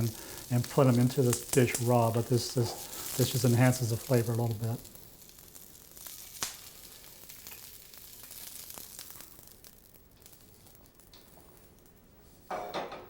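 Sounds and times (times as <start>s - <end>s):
peas clicking in a pan: 0.0s - 12.1s
peas sizzling in a pan: 0.0s - 12.5s.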